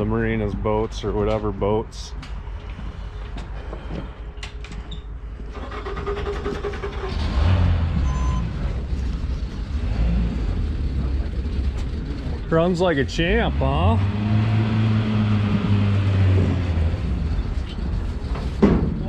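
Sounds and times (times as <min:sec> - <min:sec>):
pickup engine rumbling under load: 0:05.5 - 0:19.0.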